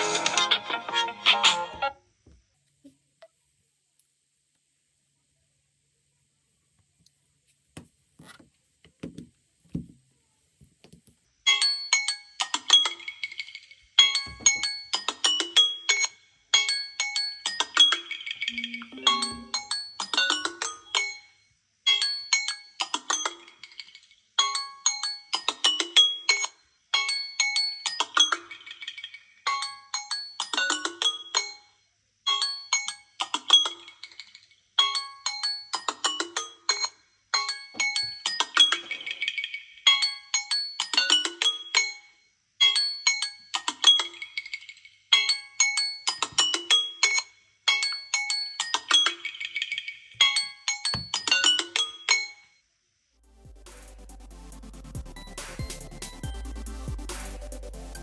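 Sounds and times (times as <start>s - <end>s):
chiming phone ringtone: 18.5s - 20.0s.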